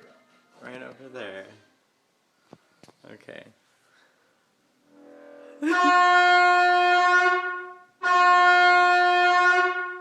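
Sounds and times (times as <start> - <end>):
air horn blasts: 4.9 - 10.0.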